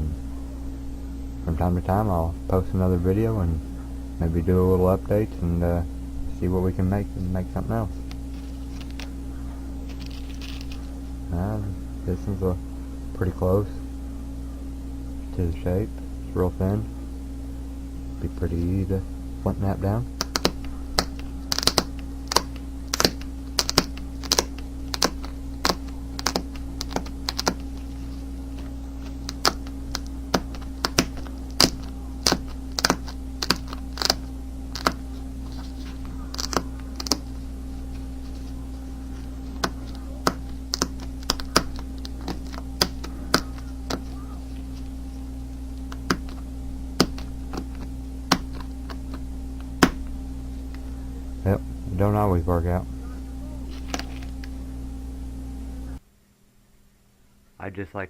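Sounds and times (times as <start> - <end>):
steady low hum: 0.0 - 58.0
flint knapping clicks: 20.2 - 27.9, 28.6 - 37.3, 39.5 - 44.1.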